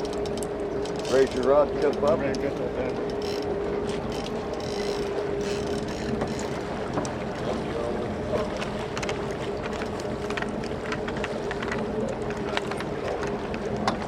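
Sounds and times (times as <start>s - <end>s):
boat engine running: 0.0s - 14.0s
water noise: 0.0s - 14.0s
wind: 0.0s - 14.0s.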